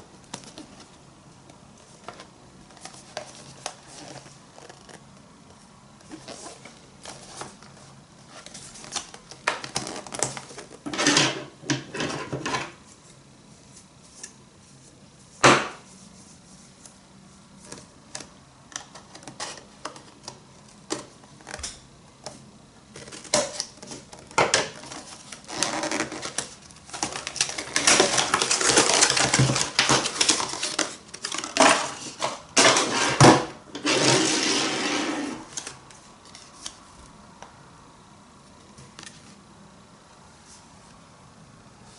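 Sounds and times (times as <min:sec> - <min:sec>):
packaging rustling: 0:22.9 - 0:34.7.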